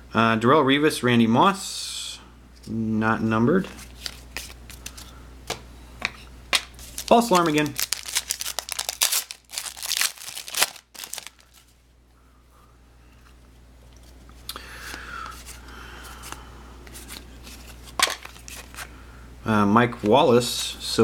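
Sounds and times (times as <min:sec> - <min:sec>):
cards rustled and handled: 0:03.6 - 0:11.8, 0:14.8 - 0:18.9
wrapper crinkling and tearing: 0:06.6 - 0:11.7.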